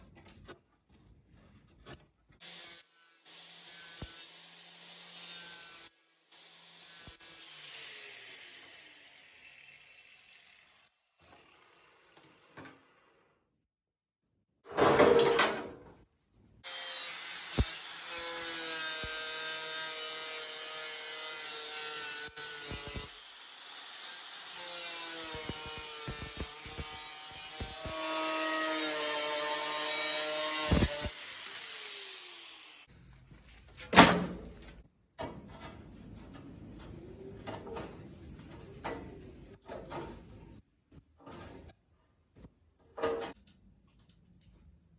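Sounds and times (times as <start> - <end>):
power tool cutting sheet steel: 2.4 - 13.4, 16.6 - 32.9.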